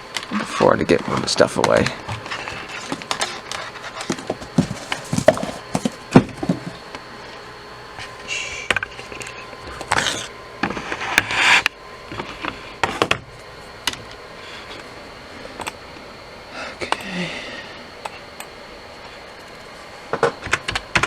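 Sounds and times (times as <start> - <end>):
scraping or rustling: 0.3 - 6.8
objects knocking and clicking: 1.1 - 6.8.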